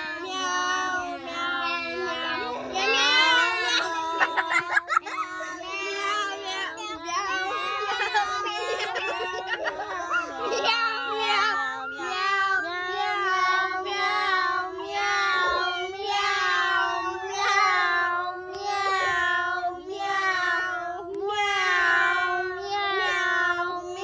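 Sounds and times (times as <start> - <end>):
child singing a wavering note: 0.0 - 4.6, 9.7 - 24.0.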